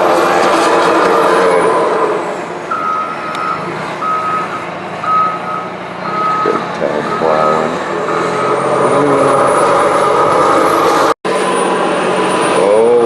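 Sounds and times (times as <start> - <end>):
heavy engine under load: 0.0 - 13.0
reversing alarm beeps: 2.7 - 10.8.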